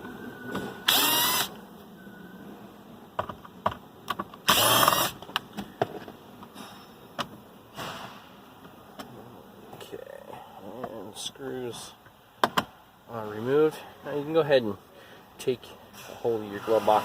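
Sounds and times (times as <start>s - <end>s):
cordless drill whirring: 0.8s - 1.5s, 4.5s - 5.2s.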